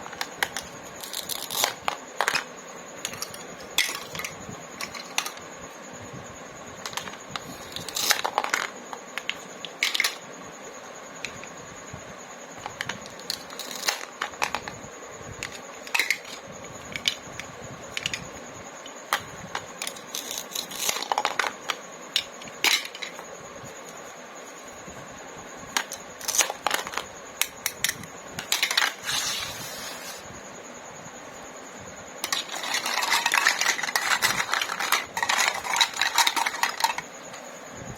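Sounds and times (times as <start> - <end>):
plastic toy pieces clicking: 32.2 - 37.1.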